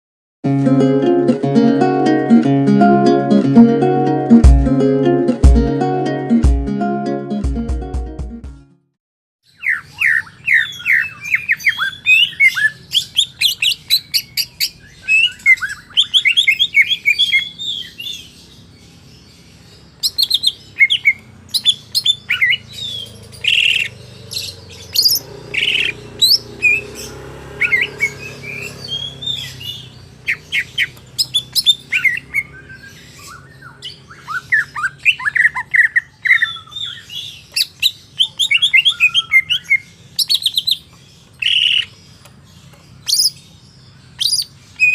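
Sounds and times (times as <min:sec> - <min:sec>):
bird singing chirps and trills: 0:09.4 - 0:44.9.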